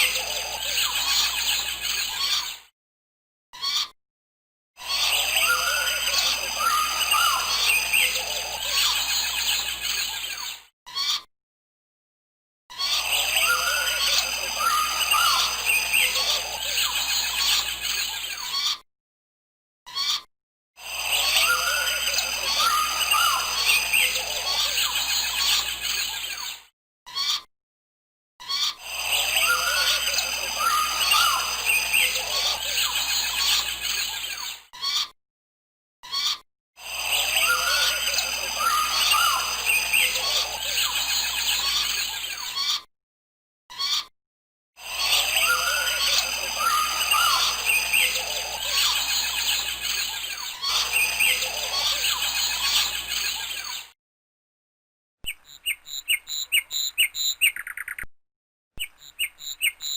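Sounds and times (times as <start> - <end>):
birds chirping in chorus: 5.4 - 8.4, 13.2 - 16.5, 21.4 - 24.5, 29.1 - 33.7, 37.2 - 40.8, 45.0 - 50.0, 50.6 - 53.5, 55.3 - 58.0.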